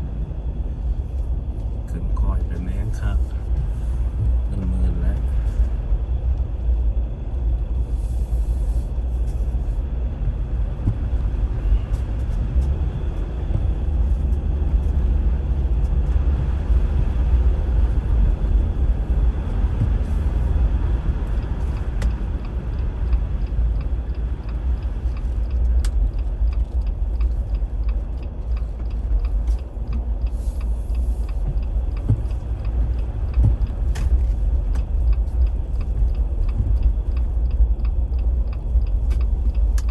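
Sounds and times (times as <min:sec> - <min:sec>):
car engine and road noise: 0:00.0 - 0:39.9
faint regular ticking: 0:19.8 - 0:39.9.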